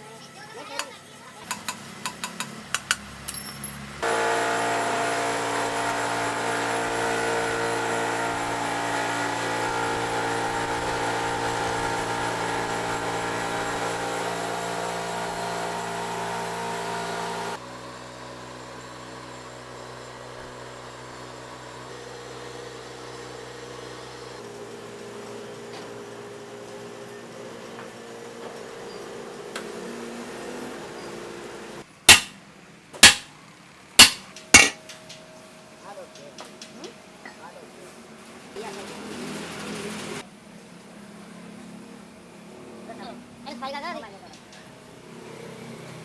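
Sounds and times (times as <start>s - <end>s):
metallic clinks: 1.5s - 3.9s, 34.0s - 35.2s.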